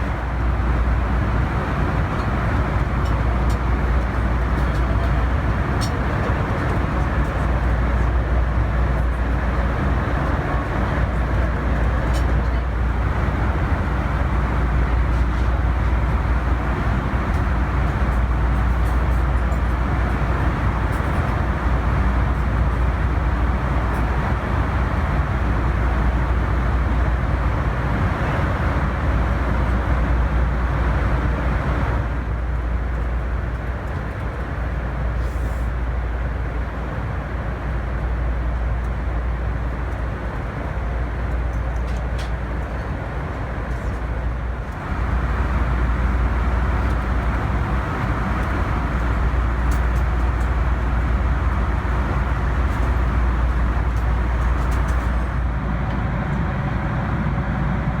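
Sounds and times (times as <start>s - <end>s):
low engine rumble: 0.0s - 58.0s
rushing airflow: 51.2s - 58.0s.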